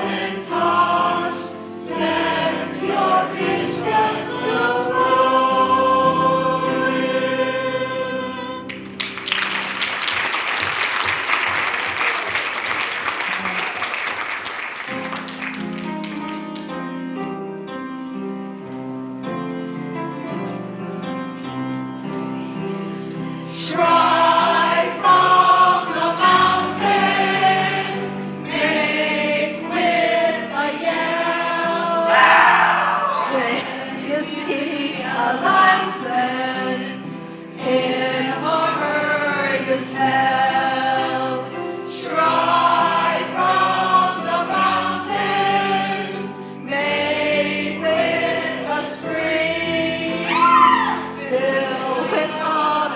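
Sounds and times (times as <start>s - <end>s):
group singing: 0.0s - 8.7s, 23.5s - 52.9s
people clapping: 8.7s - 16.9s.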